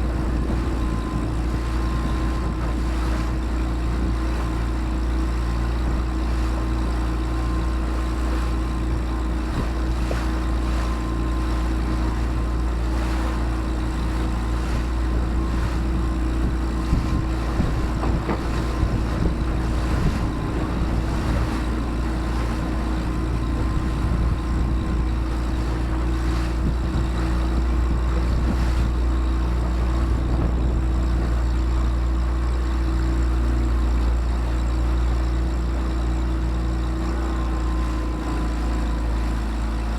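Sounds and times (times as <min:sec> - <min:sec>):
wind noise: 0:00.0 - 0:31.9
motorboat engine droning: 0:00.0 - 0:39.9
water noise: 0:00.0 - 0:39.9.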